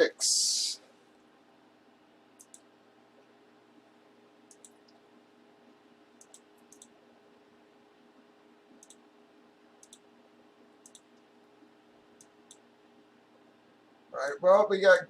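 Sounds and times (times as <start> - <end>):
low room hum: 0.0 - 15.0
computer mouse clicks: 2.4 - 2.7, 4.5 - 5.0, 6.2 - 6.9, 8.8 - 9.0, 9.8 - 10.0, 10.8 - 11.3, 12.2 - 12.7.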